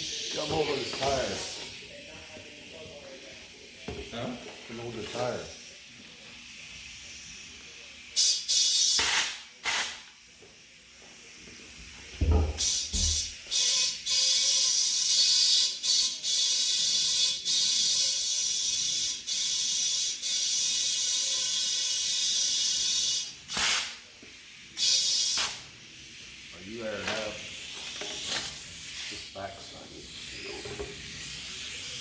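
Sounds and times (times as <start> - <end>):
compressed air hissing from hose: 0.0 - 2.0, 2.6 - 32.0
low thump: 12.2 - 12.6.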